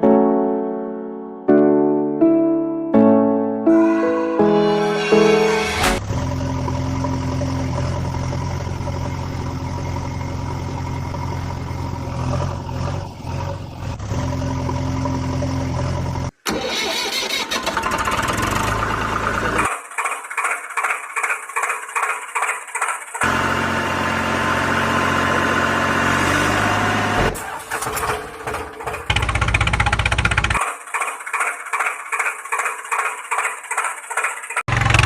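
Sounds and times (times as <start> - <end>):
pulsing engine: 5.5 - 35.0
vehicle engine running: 5.8 - 16.4, 18.0 - 35.0.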